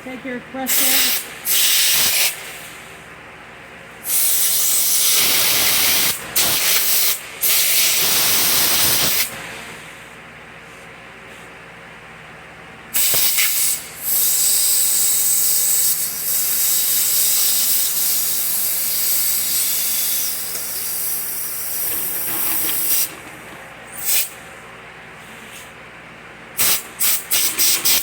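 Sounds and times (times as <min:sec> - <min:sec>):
compressed air blow gun hissing: 0:00.7 - 0:02.4.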